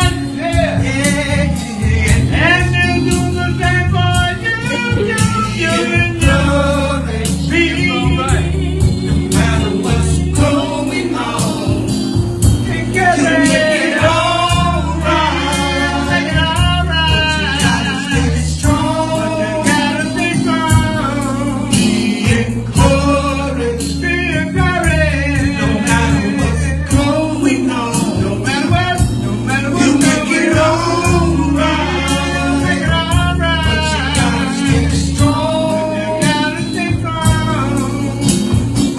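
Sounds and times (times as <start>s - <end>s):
band playing: 0.0s - 38.9s
men singing gospel: 0.0s - 38.9s.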